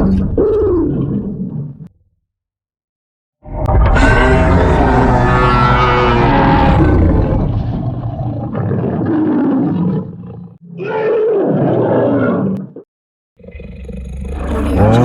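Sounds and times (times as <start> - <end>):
cartoon dinosaur roars: 3.6 - 12.7, 13.4 - 15.0.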